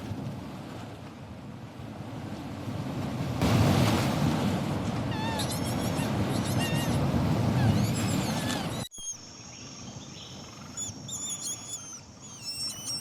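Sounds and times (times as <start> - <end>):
rushing river water: 2.9 - 8.4
birds chirping: 5.1 - 13.0.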